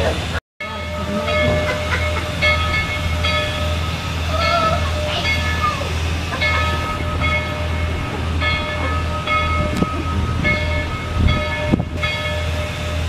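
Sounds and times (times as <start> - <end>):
low train rumble: 0.0 - 13.0
steam locomotive chime whistle: 0.6 - 13.0.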